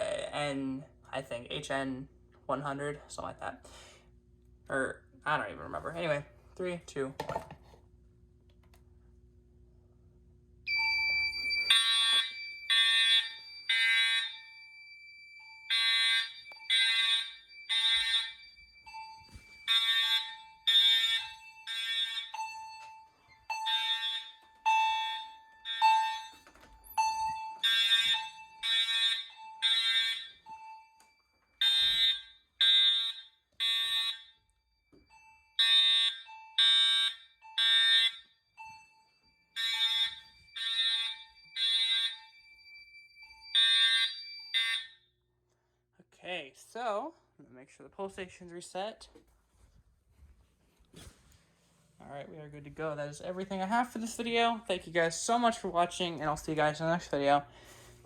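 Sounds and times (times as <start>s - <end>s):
fire alarm horn blasts: 10.7s - 45.2s.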